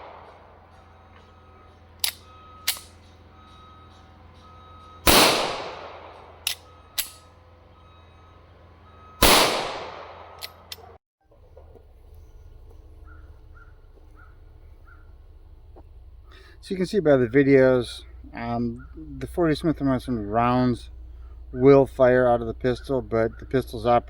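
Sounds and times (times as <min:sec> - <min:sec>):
pistol shots echoing: 0:05.0 - 0:06.6, 0:09.2 - 0:11.0.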